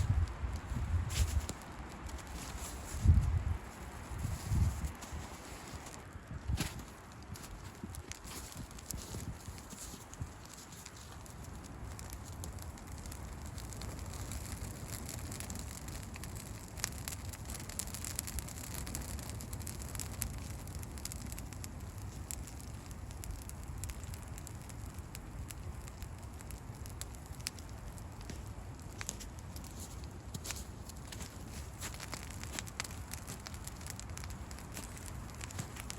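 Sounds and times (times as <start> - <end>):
campfire crackling: 0.0 - 35.9
fire pops and snaps: 0.0 - 35.9.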